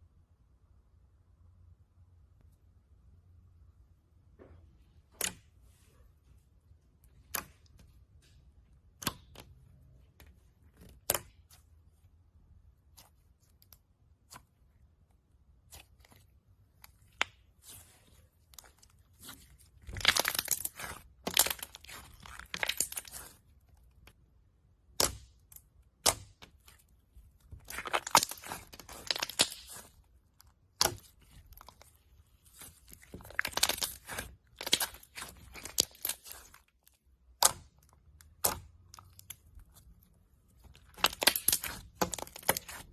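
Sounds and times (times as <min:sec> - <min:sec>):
slime crackling and clicking: 0:07.1 - 0:11.7, 0:12.8 - 0:42.9
slime popping: 0:15.6 - 0:24.1, 0:24.8 - 0:42.9.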